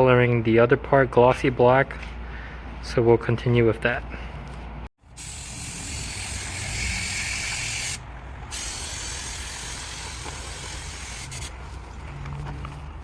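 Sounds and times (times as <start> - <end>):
spray paint hissing: 5.1 - 11.6.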